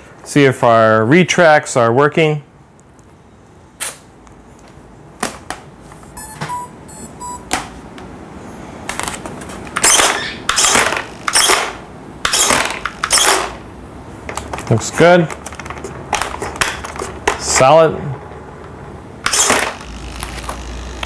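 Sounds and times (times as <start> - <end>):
short electronic beeps: 6.2 - 7.5.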